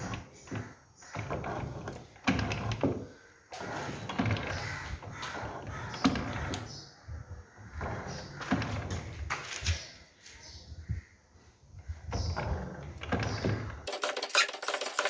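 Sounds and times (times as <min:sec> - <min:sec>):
metal parts scraping and knocking: 0:12.9 - 0:15.0.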